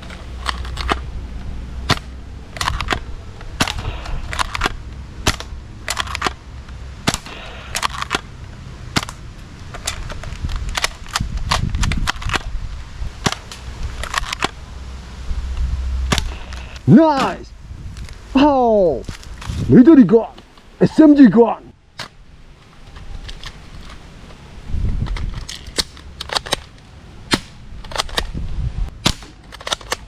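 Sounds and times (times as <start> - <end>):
toy gun snapping shots: 3.6 - 6.4, 29.0 - 30.0.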